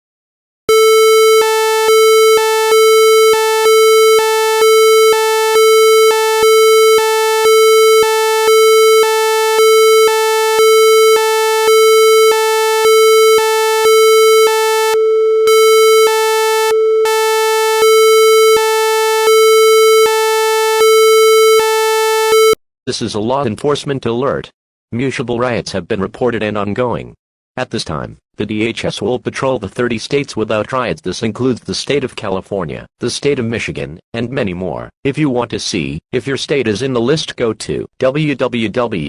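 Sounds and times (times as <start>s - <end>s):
loud buzzy alert tone: 0.7s - 22.6s.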